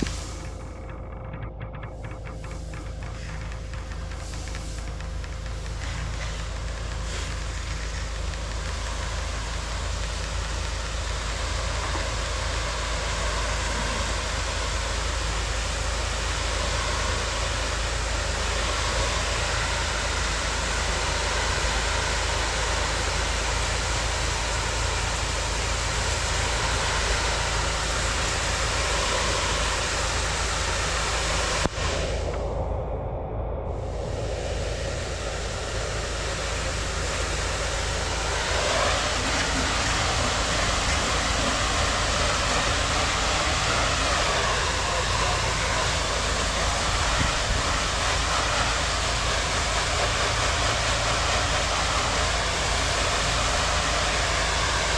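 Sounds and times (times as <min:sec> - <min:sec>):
high-pressure water spray hiss: 0:00.0 - 0:32.8, 0:33.6 - 0:54.9
engine hum: 0:00.0 - 0:54.9.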